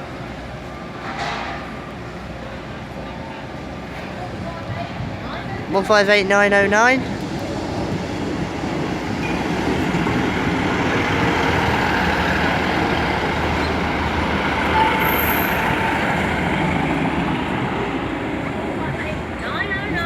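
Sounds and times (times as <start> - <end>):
train rumbling on rails: 0.0 - 20.0
wheel squeal: 13.5 - 13.9.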